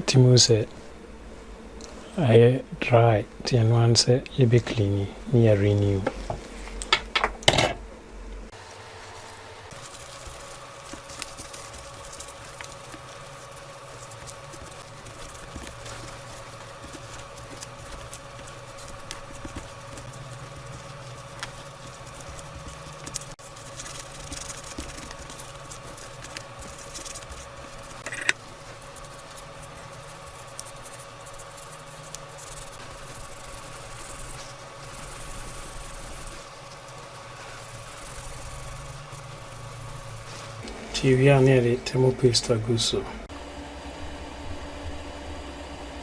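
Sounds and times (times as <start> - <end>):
steady electrical hum: 0.0 - 46.0
scraping and wiping thermal paste: 8.5 - 40.6.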